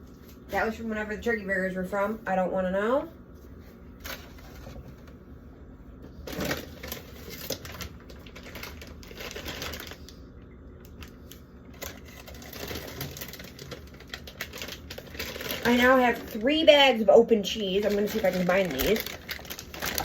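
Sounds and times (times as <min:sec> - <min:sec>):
plastic packaging clicking and rustling: 0:04.0 - 0:05.2, 0:06.2 - 0:10.2, 0:10.8 - 0:16.6, 0:17.6 - 0:20.0.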